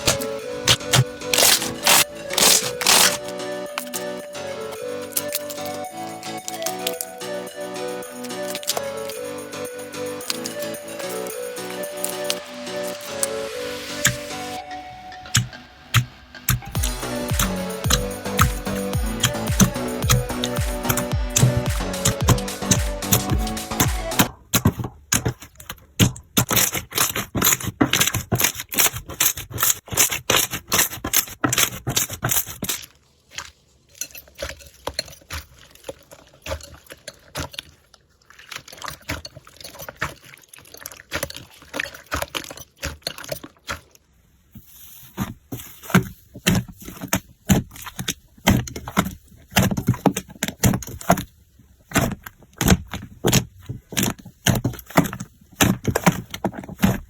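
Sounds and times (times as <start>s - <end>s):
slime crackling and popping: 0.0s - 14.6s.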